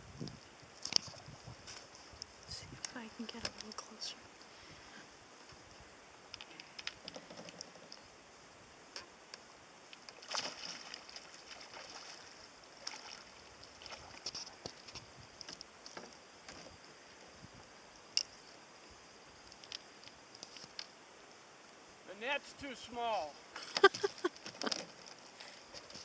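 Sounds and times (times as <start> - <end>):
water splashes and drips: 9.9 - 16.2.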